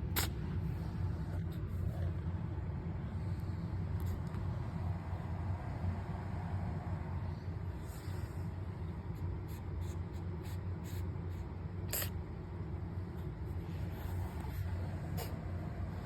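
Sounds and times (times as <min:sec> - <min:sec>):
cat sneezing: 0:00.0 - 0:00.9, 0:09.1 - 0:12.4, 0:13.2 - 0:16.0
steady low hum: 0:00.0 - 0:16.0.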